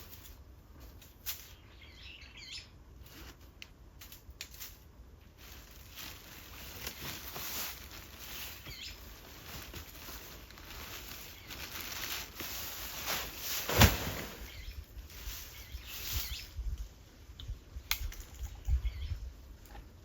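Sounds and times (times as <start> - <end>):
rustling handling noise: 0.0 - 1.6, 2.9 - 16.5.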